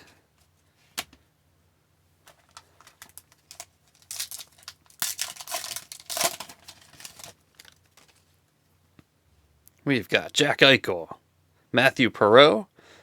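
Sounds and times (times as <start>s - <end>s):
plastic wrapper tearing and crinkling: 2.3s - 8.3s.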